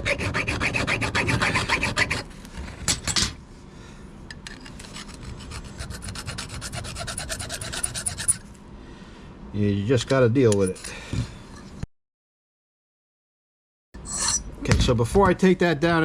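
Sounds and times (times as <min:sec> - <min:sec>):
file scraping metal: 0:00.0 - 0:02.3, 0:04.6 - 0:08.5, 0:14.0 - 0:14.5.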